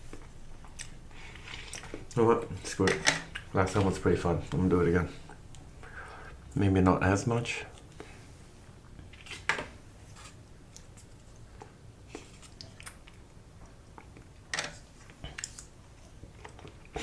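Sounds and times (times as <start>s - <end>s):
person chewing food: 0.0s - 2.2s, 10.7s - 17.0s.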